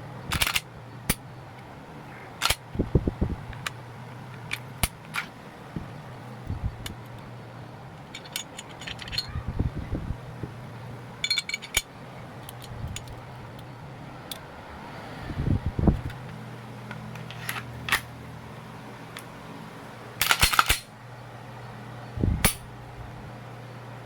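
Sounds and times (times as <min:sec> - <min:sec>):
steady low hum: 0:00.0 - 0:24.0
pistol parts clicking and clacking: 0:00.3 - 0:01.2, 0:02.4 - 0:02.7, 0:03.5 - 0:05.4, 0:08.0 - 0:09.3, 0:11.2 - 0:14.4, 0:16.8 - 0:18.1, 0:20.2 - 0:20.9.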